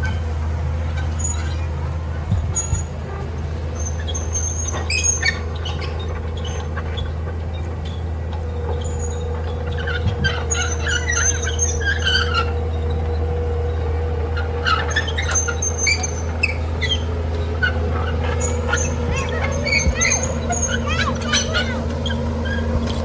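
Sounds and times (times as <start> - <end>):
heavy machine engine droning: 0.0 - 23.0
high-pitched squeaks and chirps: 8.7 - 12.6, 14.7 - 23.0.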